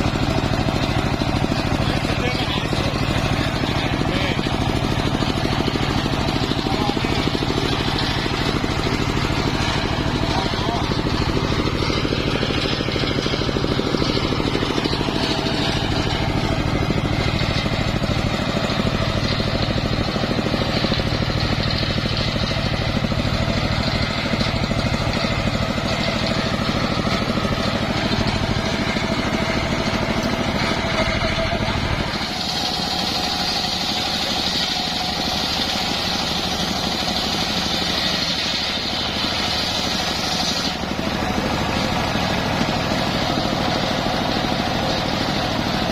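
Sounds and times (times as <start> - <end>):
engine-driven circular saw running: 0.0 - 45.9.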